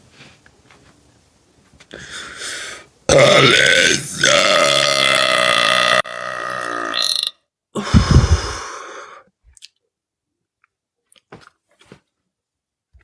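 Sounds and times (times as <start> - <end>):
woman belching: 3.1 - 8.7.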